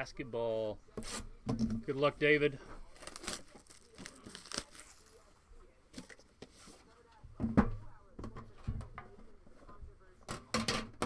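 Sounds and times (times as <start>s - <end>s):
shrink-wrap tearing and crinkling: 2.9s - 5.2s.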